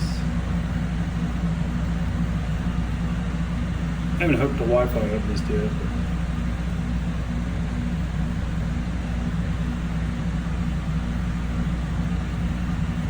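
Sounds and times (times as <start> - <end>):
compressor humming: 0.0 - 13.0
fan blowing air: 0.0 - 13.0.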